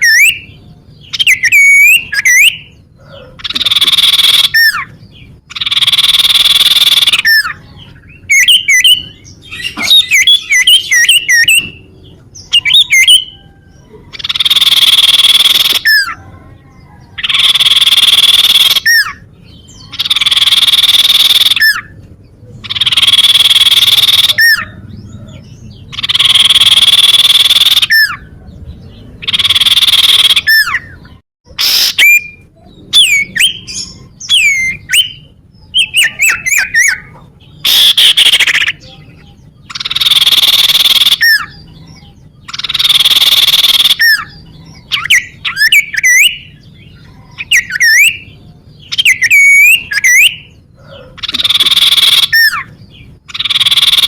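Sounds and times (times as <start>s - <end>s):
bird harsh rasping calls: 0.0s - 54.0s
bird whistled notes: 1.2s - 2.7s, 12.6s - 13.5s.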